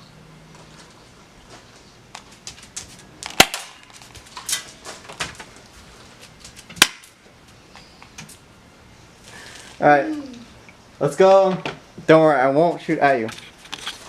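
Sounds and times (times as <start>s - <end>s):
toy gun shots: 3.3s - 3.8s.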